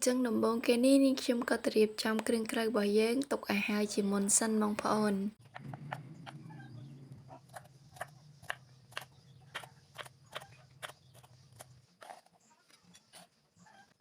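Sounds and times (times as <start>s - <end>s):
faint low hum: 0.0s - 14.0s
knife cutting on cutting board: 7.5s - 12.3s.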